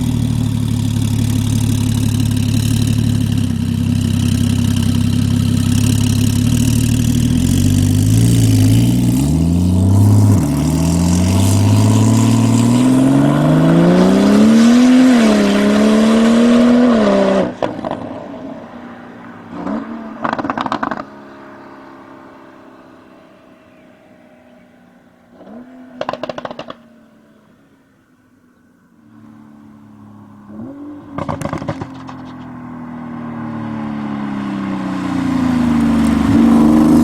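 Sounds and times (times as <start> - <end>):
car engine accelerating hard: 0.0 - 24.1, 29.0 - 37.0
exhaust crackles and pops: 17.5 - 18.3, 19.6 - 21.2, 26.0 - 26.9, 30.5 - 32.8, 33.6 - 37.0.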